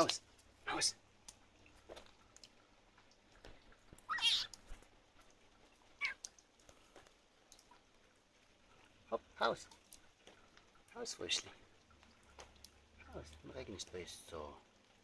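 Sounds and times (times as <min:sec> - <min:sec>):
frog squealing: 0:04.1 - 0:04.6, 0:06.0 - 0:06.2.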